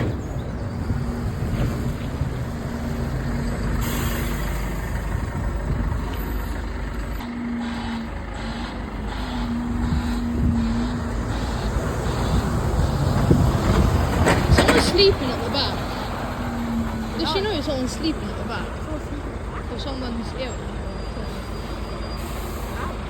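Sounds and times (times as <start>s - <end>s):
bus engine rumbling: 0.0s - 23.0s
air brakes hissing: 3.7s - 5.0s, 21.0s - 23.0s.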